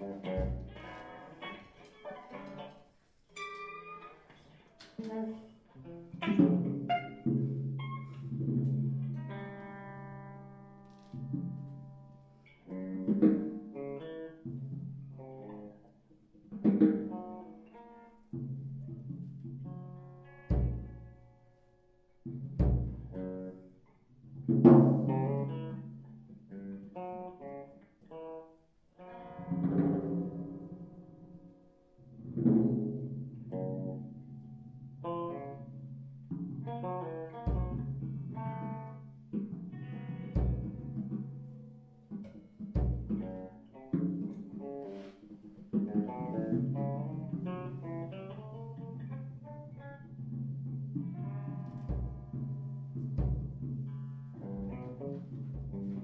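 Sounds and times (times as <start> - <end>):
plucked guitar notes: 0.0 - 56.0
drum strikes: 19.5 - 21.2, 22.3 - 23.4, 36.3 - 49.0, 50.1 - 56.0.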